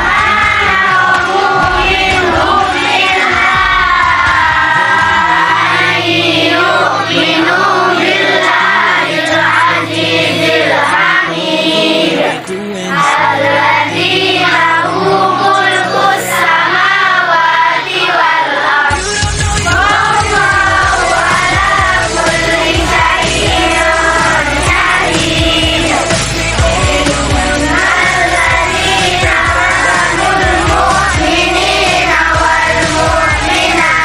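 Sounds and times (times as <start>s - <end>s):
held bass notes: 0.0s - 10.6s, 18.9s - 34.0s
voices singing a melody: 0.0s - 34.0s.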